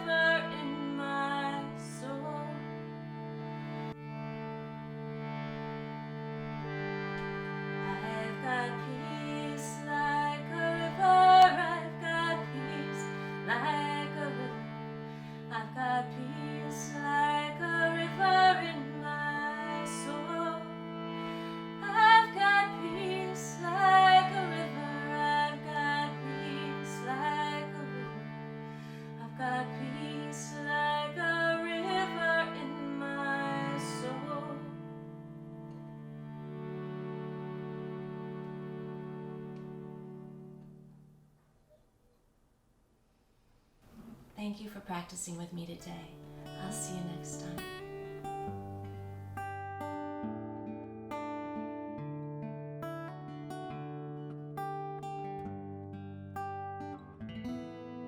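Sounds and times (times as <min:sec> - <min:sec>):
harmonium drone chords: 0:00.0 - 0:41.2, 0:46.2 - 0:51.8.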